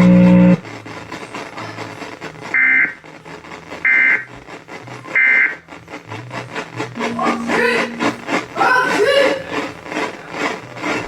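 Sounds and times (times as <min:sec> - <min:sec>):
radio data bursts: 0:03.8 - 0:04.3, 0:05.2 - 0:10.5.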